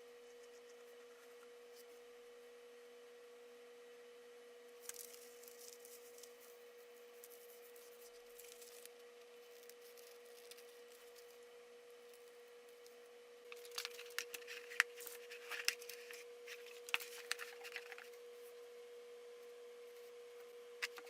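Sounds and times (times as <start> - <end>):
faint steady hum: 0.0 - 21.0
faint scratching: 5.0 - 11.5.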